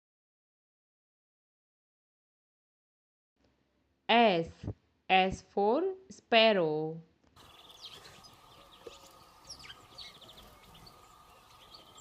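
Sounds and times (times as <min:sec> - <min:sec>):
sparrow chirping: 0:07.4 - 0:12.0.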